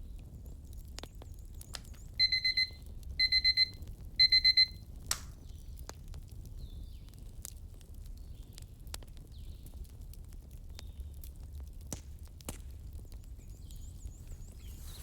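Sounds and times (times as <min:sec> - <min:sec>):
fire crackling: 0:00.0 - 0:15.0
high digital timer beeps: 0:02.2 - 0:04.8
sharp fire pop: 0:05.1 - 0:05.4.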